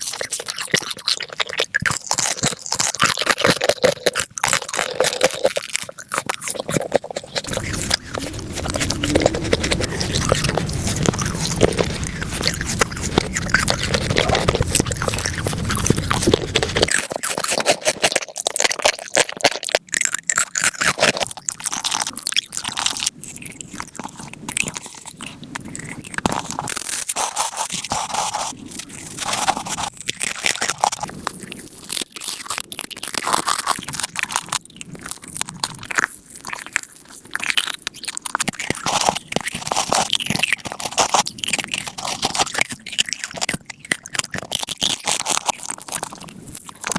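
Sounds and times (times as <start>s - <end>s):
crunching and chewing food: 0.0s - 46.9s
low rumble: 7.4s - 16.8s.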